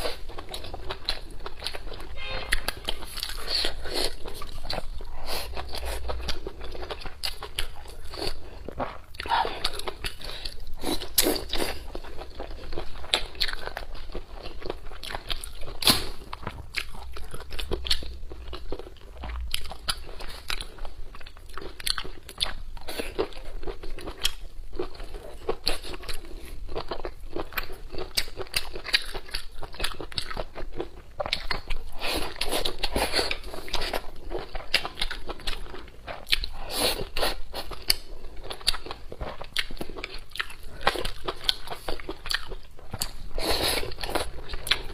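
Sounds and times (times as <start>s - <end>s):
person chewing and crunching food: 0.0s - 44.9s.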